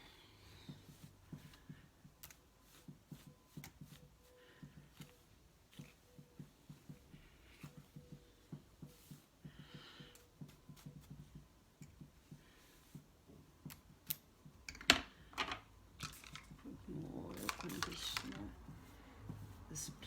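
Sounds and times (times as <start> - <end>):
hands handling wig and comb: 15.9 - 20.0.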